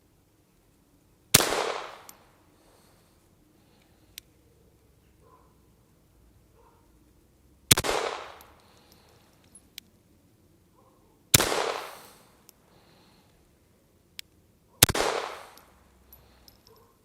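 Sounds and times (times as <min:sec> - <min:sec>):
pistol shots with echo: 0:01.4 - 0:02.2, 0:07.7 - 0:08.8, 0:11.4 - 0:12.3, 0:14.8 - 0:15.7.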